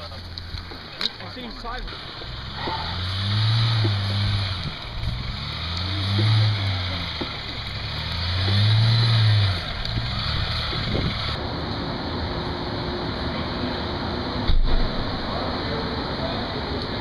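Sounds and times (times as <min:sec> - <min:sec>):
car engine revving: 0:01.9 - 0:12.3.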